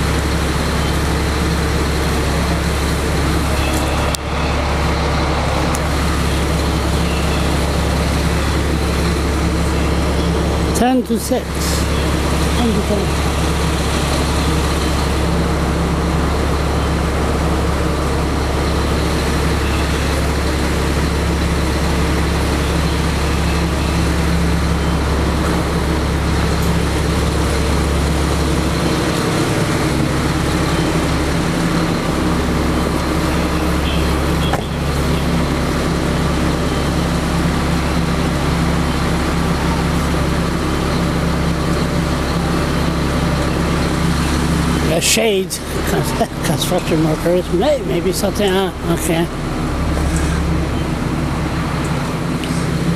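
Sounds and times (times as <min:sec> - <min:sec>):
traffic noise: 0:00.0 - 0:52.9
vehicle engine running: 0:00.0 - 0:52.9.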